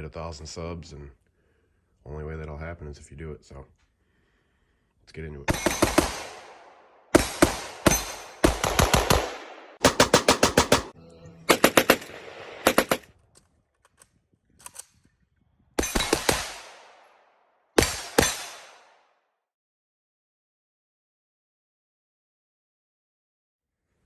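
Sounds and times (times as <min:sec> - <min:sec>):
rapid gunfire with echo: 0:05.5 - 0:13.1, 0:15.8 - 0:19.0.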